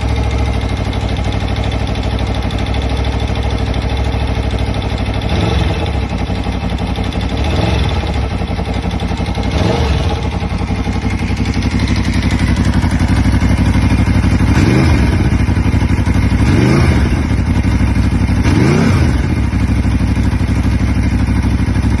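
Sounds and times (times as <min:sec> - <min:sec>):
motorcycle engine idling: 0:00.0 - 0:22.0.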